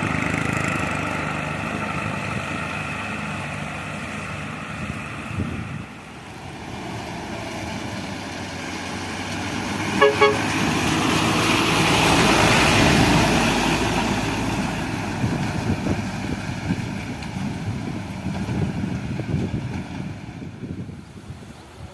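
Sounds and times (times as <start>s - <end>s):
heavy truck engine running: 0.0s - 21.9s
truck horn toots: 10.0s - 10.7s.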